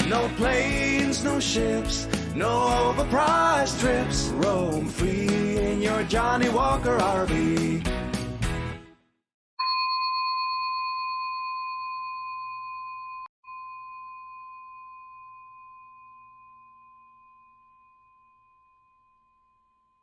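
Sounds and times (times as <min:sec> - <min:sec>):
struck bell chime ringing: 0:09.6 - 0:19.6.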